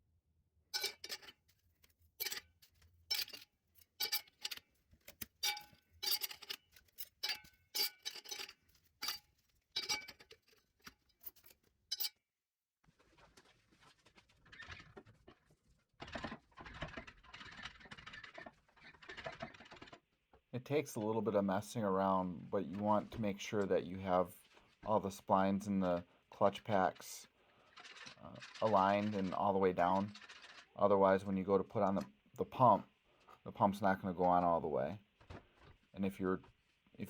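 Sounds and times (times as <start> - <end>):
metal parts clinking: 0.8 - 1.4, 2.2 - 12.2
parts scraping and rustling: 0.8 - 12.2, 21.8 - 30.8.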